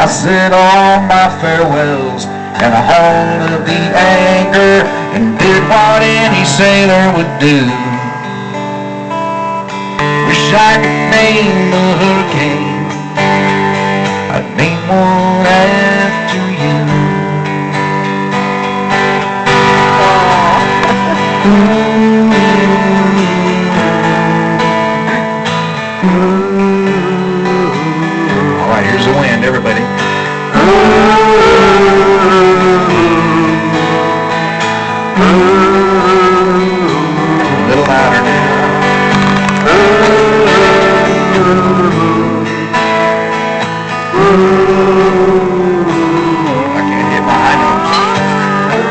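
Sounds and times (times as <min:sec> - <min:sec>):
strummed acoustic guitar: 0:00.0 - 0:48.9
live band music: 0:17.8 - 0:25.8, 0:28.4 - 0:48.9
person singing sliding ooo: 0:19.8 - 0:24.3, 0:44.1 - 0:48.9.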